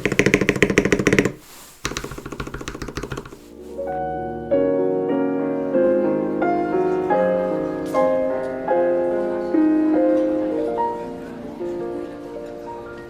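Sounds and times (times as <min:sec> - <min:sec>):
solo piano music: 0:03.4 - 0:13.0.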